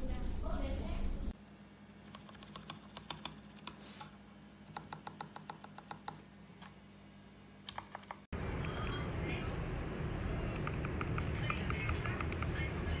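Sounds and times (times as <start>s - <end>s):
mechanical keyboard typing: 2.1s - 3.8s, 4.7s - 6.2s, 7.7s - 8.8s, 10.6s - 12.6s.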